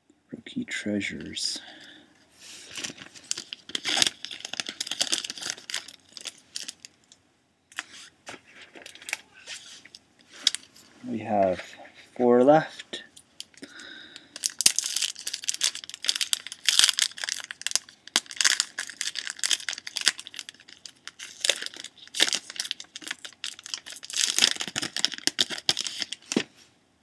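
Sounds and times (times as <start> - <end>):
foil wrapper tearing and crinkling: 2.7 - 6.9, 14.4 - 26.4.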